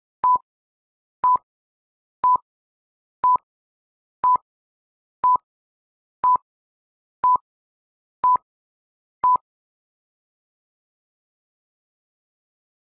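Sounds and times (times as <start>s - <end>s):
short electronic beeps: 0.2s - 0.4s.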